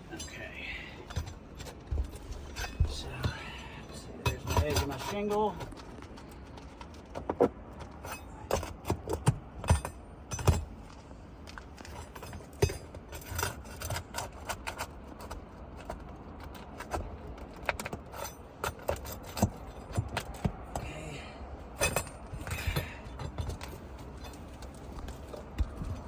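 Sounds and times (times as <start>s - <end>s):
roof shingle being pried up: 4.2s - 11.0s.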